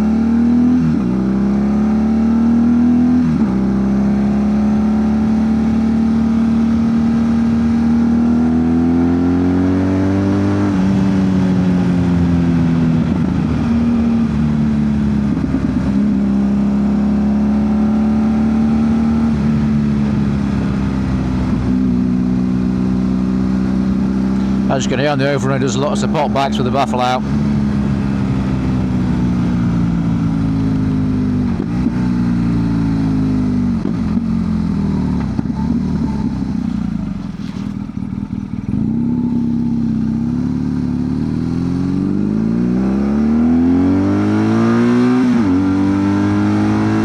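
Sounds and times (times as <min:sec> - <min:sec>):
motorcycle engine revving: 0:00.0 - 0:47.0
exhaust crackling and popping: 0:24.1 - 0:27.9, 0:33.7 - 0:40.6.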